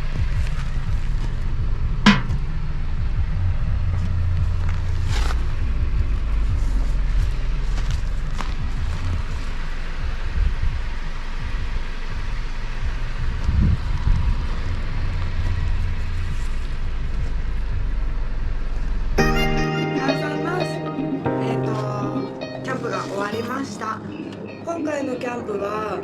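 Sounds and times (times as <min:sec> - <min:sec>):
guitar music: 0:19.2 - 0:24.7.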